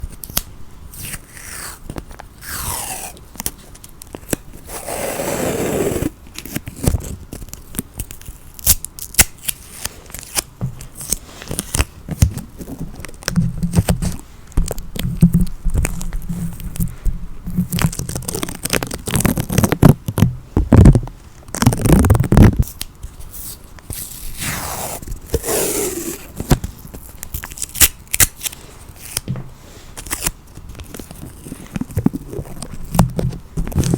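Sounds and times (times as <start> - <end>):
sticky tape peeling: 0.0 - 14.2, 17.7 - 20.2, 21.5 - 29.2
low rubbing of tape: 4.6 - 7.1, 23.3 - 27.1.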